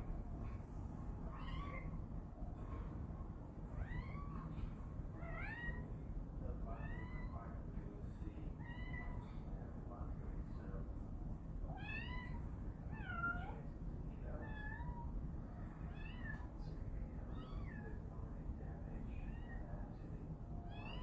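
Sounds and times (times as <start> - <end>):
kitten meowing: 1.3 - 2.0, 3.8 - 4.5, 5.2 - 5.9, 6.7 - 7.4, 14.4 - 15.1, 15.8 - 16.5, 17.3 - 18.0, 20.7 - 21.0.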